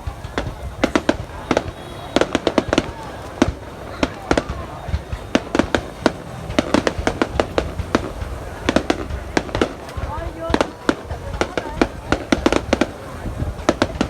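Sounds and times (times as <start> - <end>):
fireworks sharp bangs: 0.0 - 14.0
steady low rumble: 0.0 - 14.0.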